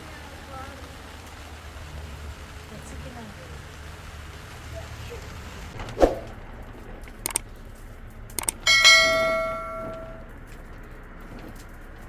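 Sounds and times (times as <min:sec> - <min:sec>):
light clicks: 0:07.0 - 0:07.6, 0:08.3 - 0:08.6
metal object struck ringing: 0:08.6 - 0:10.3.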